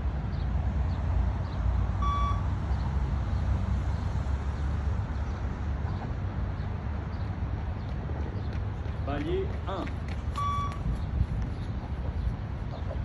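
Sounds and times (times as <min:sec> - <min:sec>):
short electronic beep: 0:02.0 - 0:02.5, 0:10.4 - 0:10.8.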